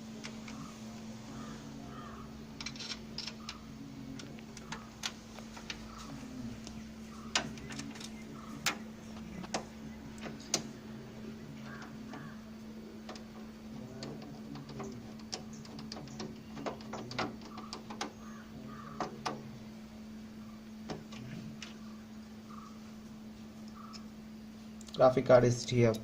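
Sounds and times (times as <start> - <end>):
steady low hum: 0.0 - 26.0
screwdriver clicking on metal: 2.6 - 3.6, 13.1 - 19.4.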